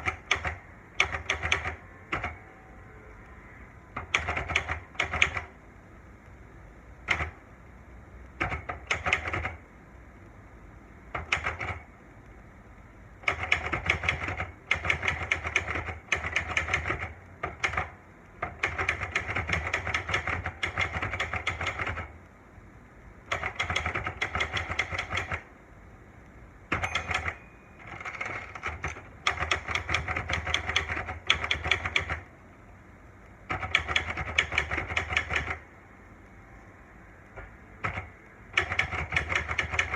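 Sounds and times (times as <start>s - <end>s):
typewriter keystrokes: 0.0s - 2.4s, 3.9s - 5.6s, 7.0s - 7.4s, 8.3s - 9.6s, 11.1s - 11.9s, 13.2s - 22.2s, 23.3s - 25.5s, 26.7s - 32.3s, 33.5s - 35.6s, 37.3s - 39.9s.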